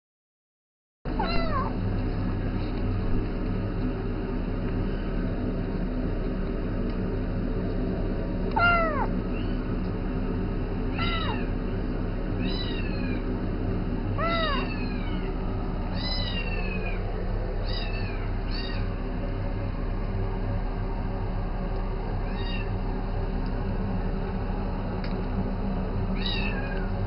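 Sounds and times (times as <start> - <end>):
steady low hum: 1.1 - 27.0
cat meowing: 1.2 - 1.8, 8.5 - 9.6, 11.0 - 11.5, 12.4 - 13.2, 14.2 - 15.3, 16.0 - 17.0, 17.6 - 18.9, 22.2 - 22.7, 26.2 - 26.9.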